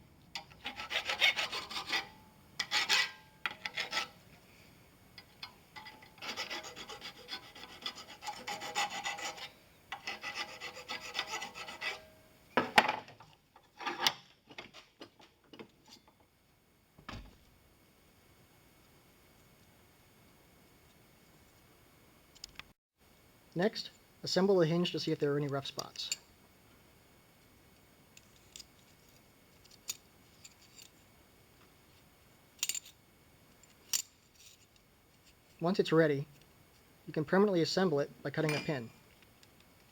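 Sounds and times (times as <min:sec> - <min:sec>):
hand file on sheet metal: 0:00.6 - 0:04.2, 0:06.2 - 0:12.1.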